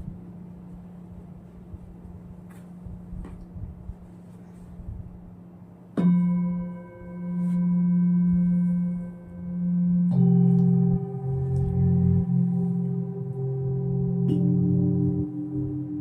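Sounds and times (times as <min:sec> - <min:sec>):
lower-pitched singing bowl: 0:06.0 - 0:16.0
singing bowl ringing: 0:06.0 - 0:16.0.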